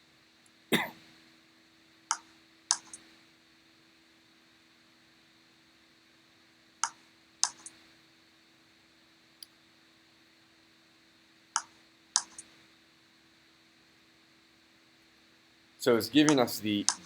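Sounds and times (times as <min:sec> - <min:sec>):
faint electrical hum: 0:00.0 - 0:17.0
computer mouse clicks: 0:02.1 - 0:03.0, 0:06.8 - 0:07.8, 0:11.6 - 0:12.5, 0:16.3 - 0:17.0.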